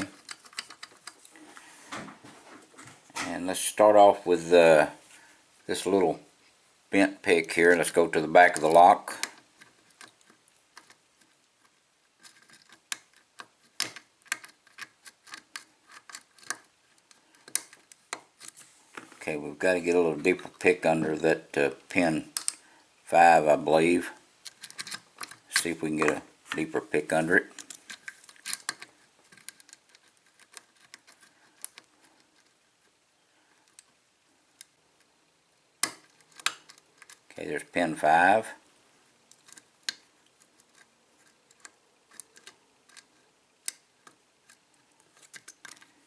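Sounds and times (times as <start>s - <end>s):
lock pick clicking and scraping: 0.0s - 1.3s, 8.5s - 18.6s, 22.3s - 22.6s, 24.4s - 26.7s, 27.4s - 33.0s, 35.8s - 37.3s, 39.3s - 46.0s.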